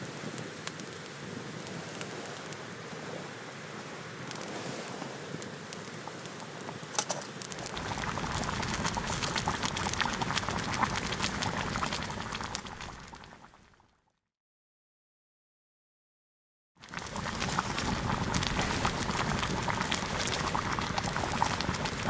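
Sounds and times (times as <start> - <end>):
campfire crackling and popping: 0.0 - 2.9, 4.2 - 13.8, 16.8 - 22.0.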